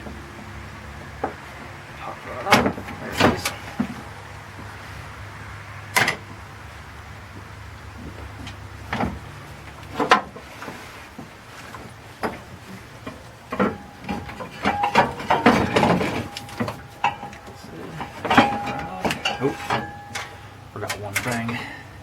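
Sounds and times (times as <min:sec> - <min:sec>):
rattling knocks: 0:02.3 - 0:04.8, 0:11.7 - 0:22.0
plastic fan shroud knocking: 0:12.2 - 0:21.5.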